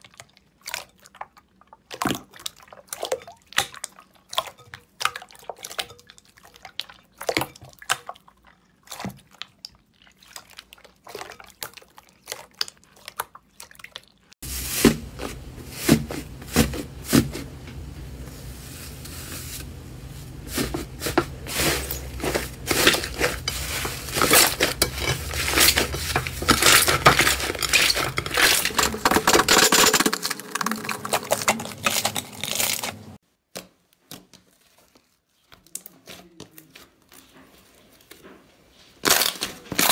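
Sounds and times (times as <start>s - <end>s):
slime crackling and squishing: 6.2s - 33.2s
low hum: 14.5s - 33.2s.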